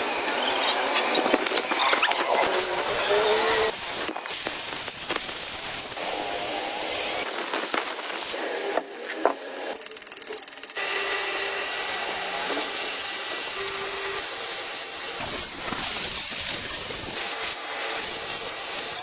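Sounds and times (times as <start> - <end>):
machining noise: 0.0 - 3.8.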